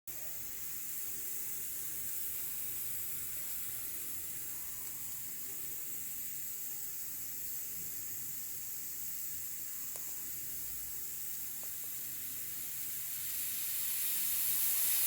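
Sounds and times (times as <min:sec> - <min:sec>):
pressure cooker steam hissing: 0:00.1 - 0:15.0.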